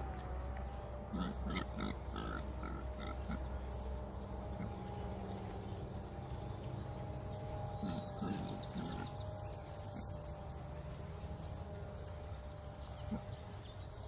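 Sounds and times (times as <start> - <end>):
faint hum: 0.0 - 14.0
pigs grunting: 1.0 - 5.5, 7.0 - 11.2, 12.8 - 13.6.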